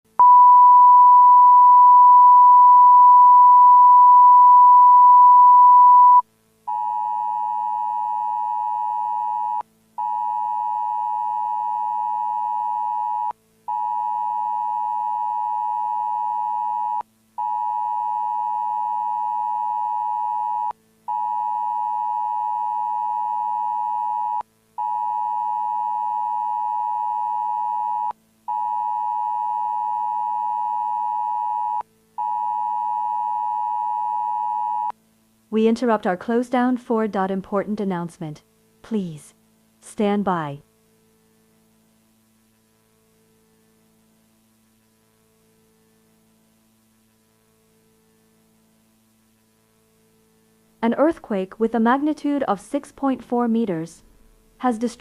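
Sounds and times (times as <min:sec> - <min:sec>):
steady pure test tone: 0:00.1 - 0:35.0.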